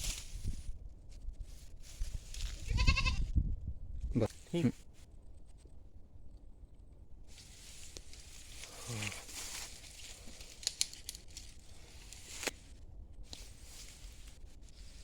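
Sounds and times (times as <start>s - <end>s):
dry leaves rustling: 0.0s - 0.7s, 1.3s - 3.0s, 7.3s - 15.0s.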